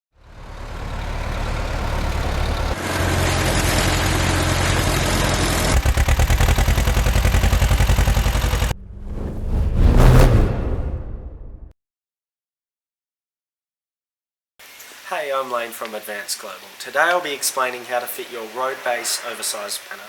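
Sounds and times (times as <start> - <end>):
vehicle engines running: 0.2 - 10.0.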